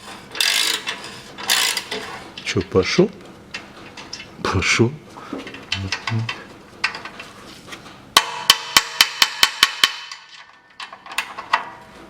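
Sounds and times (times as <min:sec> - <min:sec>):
ratchet wrench clicking: 0:00.4 - 0:02.0.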